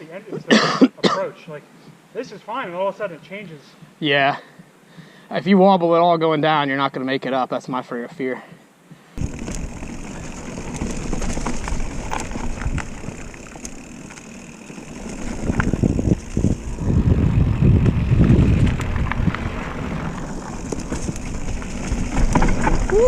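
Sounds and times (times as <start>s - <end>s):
wind buffeting microphone: 9.2s - 13.9s, 14.8s - 23.0s
bike clicks and rattles: 9.2s - 23.0s
bike tyres rumbling on dirt: 9.2s - 23.0s.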